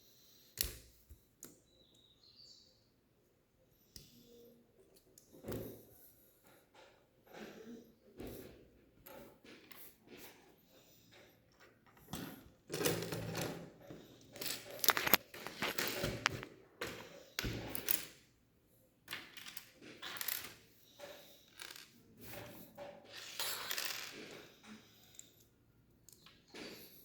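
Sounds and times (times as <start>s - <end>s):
plastic bricks clicking and clattering: 14.4s - 16.5s.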